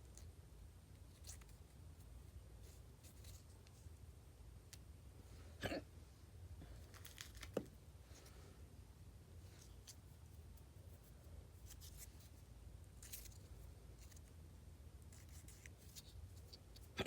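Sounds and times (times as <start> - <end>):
faint clicks and scratches: 9.5 - 14.4, 15.0 - 17.0.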